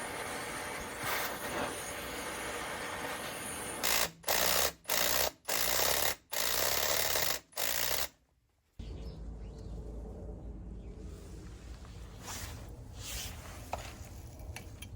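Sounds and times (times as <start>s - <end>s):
power tool bursts: 0.0s - 8.1s
steady low hum: 8.8s - 14.9s.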